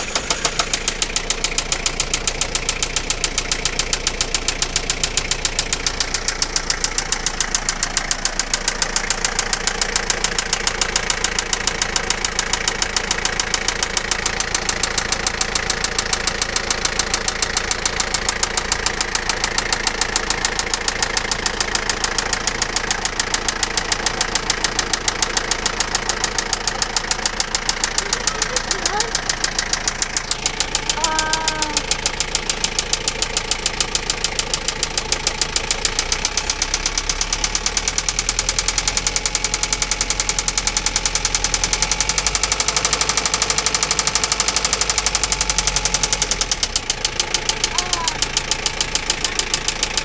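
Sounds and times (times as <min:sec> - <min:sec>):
engine idling with knock: 0:00.0 - 0:50.0.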